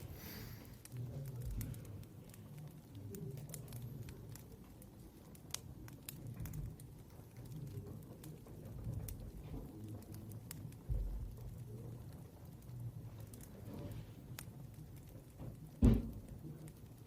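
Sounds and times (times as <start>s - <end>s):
steady low hum: 0.0s - 1.0s.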